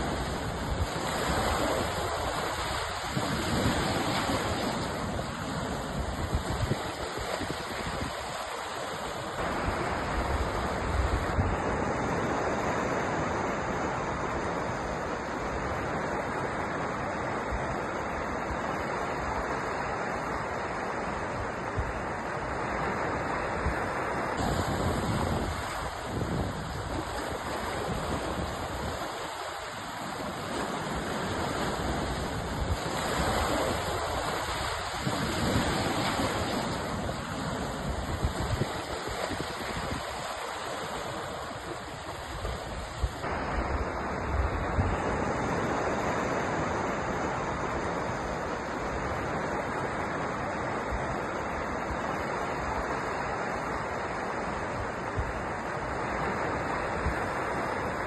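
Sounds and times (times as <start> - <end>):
sea waves breaking: 0.0 - 58.0.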